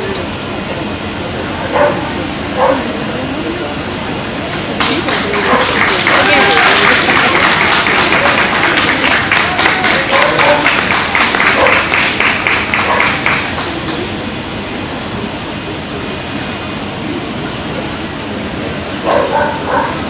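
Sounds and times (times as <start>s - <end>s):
murmur of voices in hall: 0.0s - 20.0s
audience clapping in rhythm: 4.5s - 14.3s.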